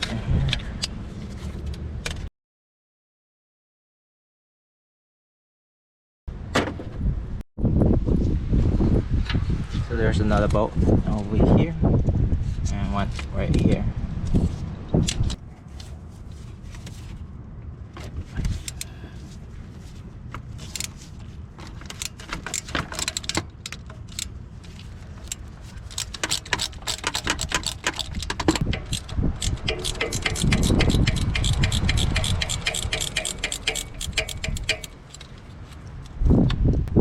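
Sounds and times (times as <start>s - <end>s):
hand ratchet clicking: 25.2s - 35.4s
metal tools clinking: 25.2s - 35.5s.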